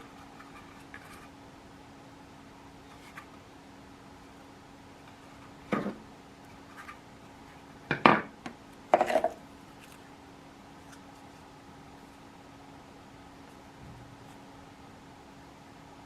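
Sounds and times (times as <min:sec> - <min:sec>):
hard objects knocking and clattering: 0:08.9 - 0:09.4.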